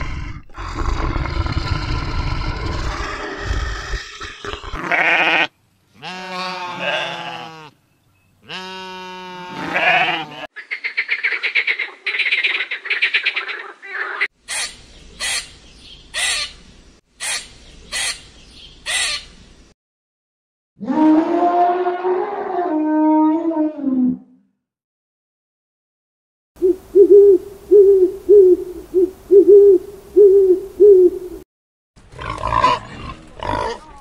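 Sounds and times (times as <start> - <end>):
animal bleating: 4.7 - 7.8, 8.4 - 10.5.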